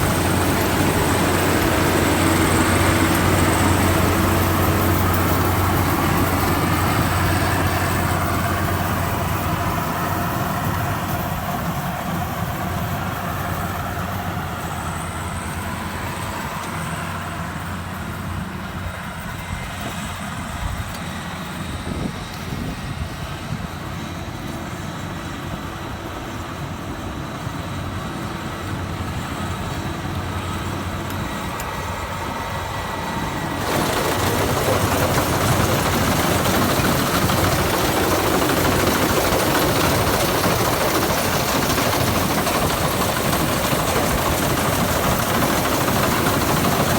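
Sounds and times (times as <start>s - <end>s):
machinery rushing noise: 0.0s - 13.6s, 31.4s - 46.9s
harvester engine rumbling: 0.0s - 22.3s, 26.7s - 46.9s.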